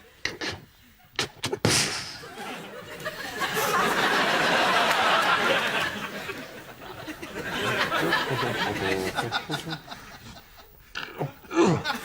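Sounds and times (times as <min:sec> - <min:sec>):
studio audience laughing: 0:02.1 - 0:10.8, 0:11.6 - 0:12.0.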